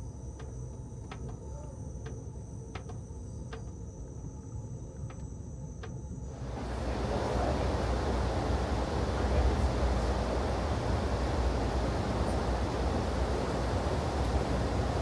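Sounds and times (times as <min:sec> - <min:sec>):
train rumbling in motion: 0:06.3 - 0:15.0.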